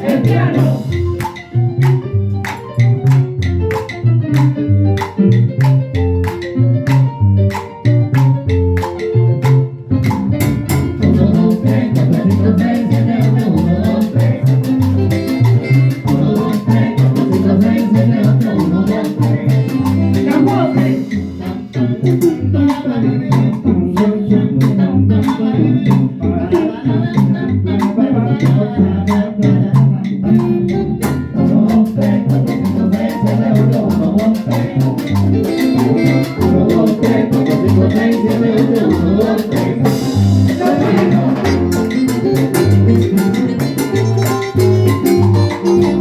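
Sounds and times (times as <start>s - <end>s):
dance band playing salsa tune: 0.0s - 46.0s
repeating bass line: 0.0s - 46.0s
steady percussion: 0.0s - 46.0s.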